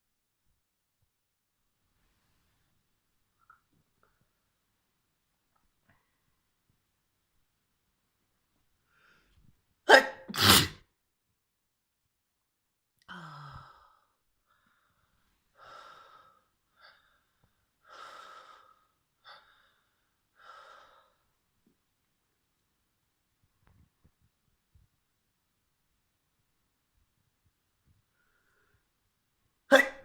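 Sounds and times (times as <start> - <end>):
person sneezing loudly: 9.9 - 10.9, 29.7 - 30.0.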